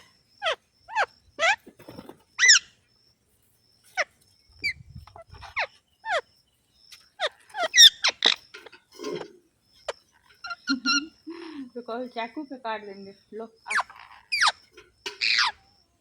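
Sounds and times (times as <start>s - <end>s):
parrot calling: 0.0s - 1.6s, 2.4s - 2.7s, 4.0s - 6.3s, 7.2s - 8.5s, 10.0s - 11.6s, 13.6s - 15.6s.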